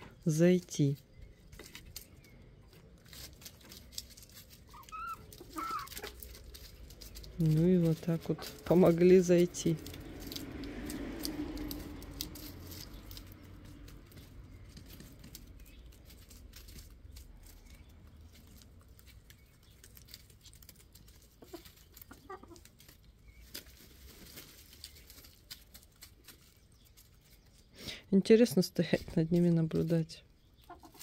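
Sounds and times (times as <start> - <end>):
faint rustles and ticks: 0.1 - 31.0
chickens clucking softly: 21.2 - 22.9, 30.6 - 31.0.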